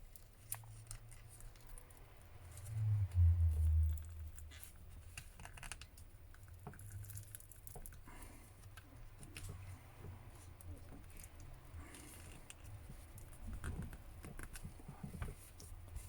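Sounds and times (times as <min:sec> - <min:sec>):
dull low bump: 0:02.7 - 0:04.5.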